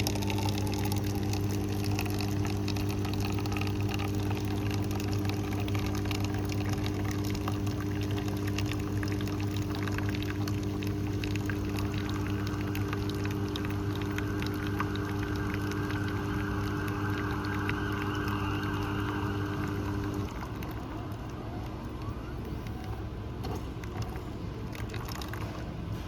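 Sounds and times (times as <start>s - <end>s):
coffee pouring into cup: 0.0s - 22.0s, 22.6s - 25.9s
coffee machine pump humming: 0.0s - 26.0s.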